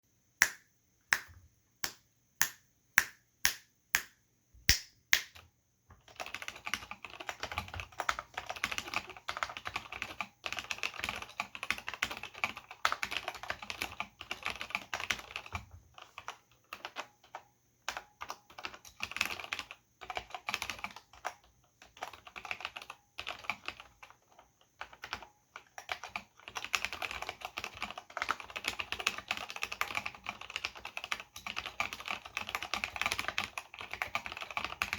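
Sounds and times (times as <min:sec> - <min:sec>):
mechanical keyboard typing: 0:06.0 - 0:34.9.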